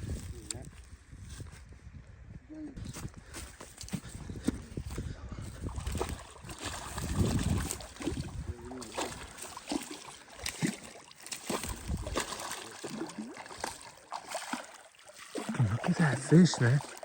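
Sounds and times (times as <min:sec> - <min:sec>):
water sloshing and splashing: 0:05.4 - 0:17.0.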